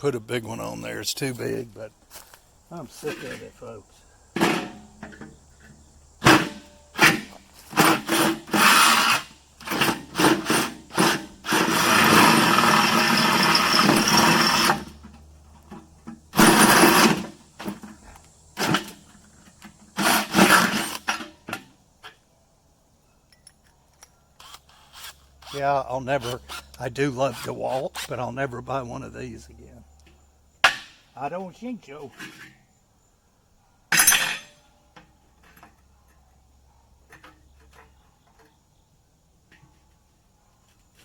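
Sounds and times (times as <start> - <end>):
power drill running: 8.0 - 14.9.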